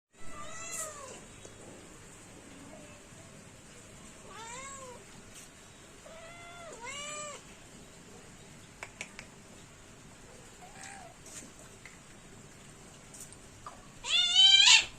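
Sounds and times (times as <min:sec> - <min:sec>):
kitten meowing: 0:06.1 - 0:07.4, 0:14.0 - 0:14.9
sharp clicks: 0:08.8 - 0:09.4.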